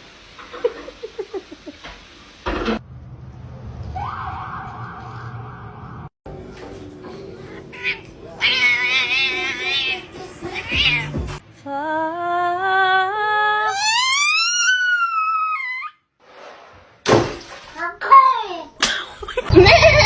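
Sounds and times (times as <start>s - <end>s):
cat yowling: 7.7s - 11.2s, 13.7s - 16.0s.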